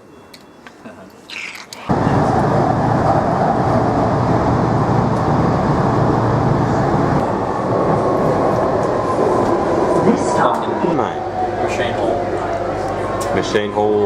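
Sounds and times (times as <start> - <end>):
passenger train rumbling: 1.8 - 14.0.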